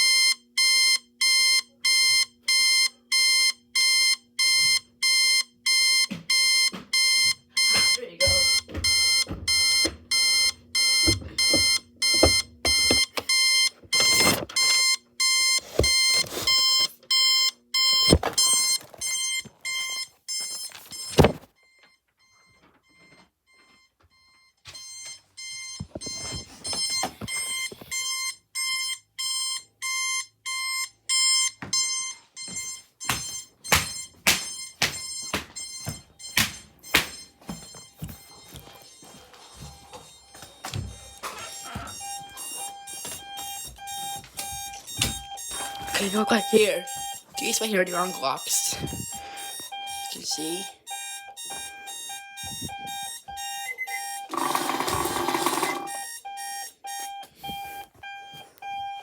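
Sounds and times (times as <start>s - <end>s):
electronic alarm beeping: 0.0s - 59.0s
heavy thumps: 7.8s - 14.6s, 32.4s - 47.4s, 48.1s - 50.0s, 51.3s - 53.4s.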